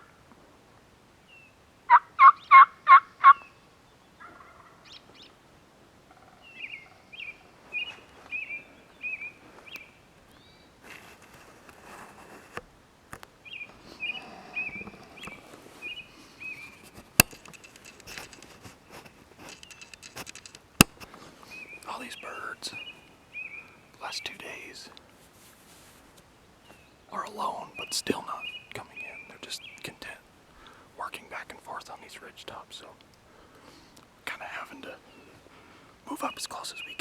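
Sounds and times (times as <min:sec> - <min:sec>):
songbird chirping: 0:00.0 - 0:37.0
rustling: 0:05.8 - 0:27.5
sharp clicks: 0:16.6 - 0:22.0.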